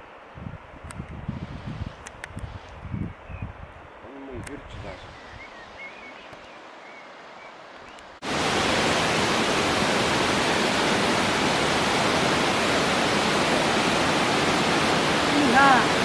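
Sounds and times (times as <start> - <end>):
waterfall rushing: 8.2 - 16.0.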